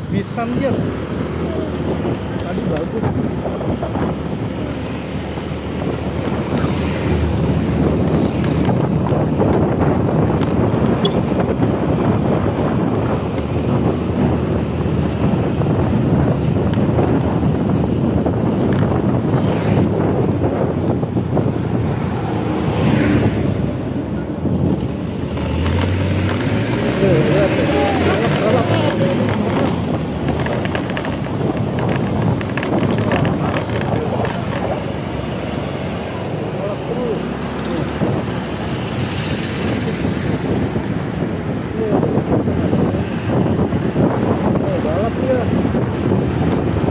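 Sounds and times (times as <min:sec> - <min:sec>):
vehicle rumble at speed: 0:00.0 - 0:46.9
wind buffeting microphone: 0:00.0 - 0:46.9.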